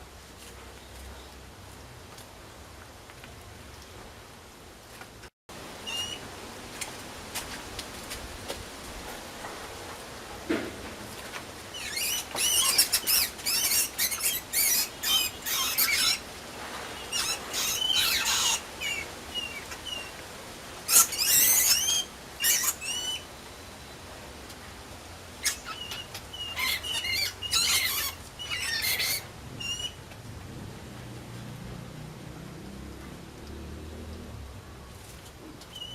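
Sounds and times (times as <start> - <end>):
mouse squeaking: 11.7 - 16.2, 17.1 - 20.1, 20.9 - 23.2, 25.4 - 30.0.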